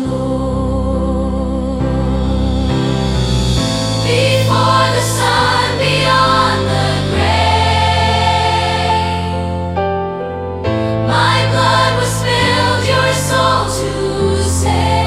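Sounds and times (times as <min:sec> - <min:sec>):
low held accompaniment: 0:00.0 - 0:15.0
choir singing sustained notes: 0:03.9 - 0:09.9, 0:10.9 - 0:15.0.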